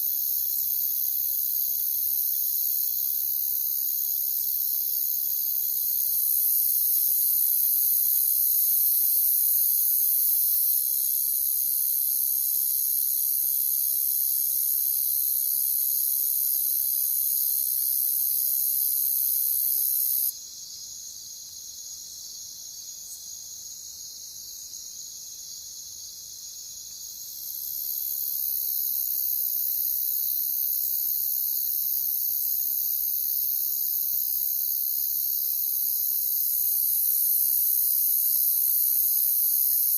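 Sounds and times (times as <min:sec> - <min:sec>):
crickets trilling: 0:00.0 - 0:20.7, 0:27.3 - 0:39.9.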